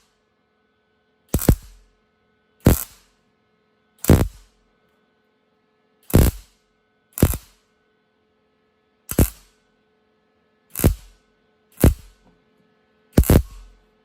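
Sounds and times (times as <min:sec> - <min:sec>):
welder crackling bursts: 0:01.3 - 0:01.8, 0:02.6 - 0:03.0, 0:04.0 - 0:04.4, 0:06.1 - 0:06.4, 0:07.2 - 0:07.5, 0:09.1 - 0:09.4, 0:10.8 - 0:11.1, 0:11.8 - 0:12.1, 0:13.2 - 0:13.6.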